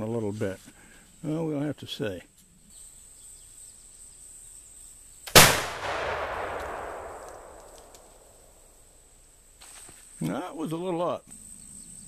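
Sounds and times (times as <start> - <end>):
high insect buzz: 2.3 - 5.4, 11.3 - 12.0
loud rifle shot echoing: 5.3 - 8.4.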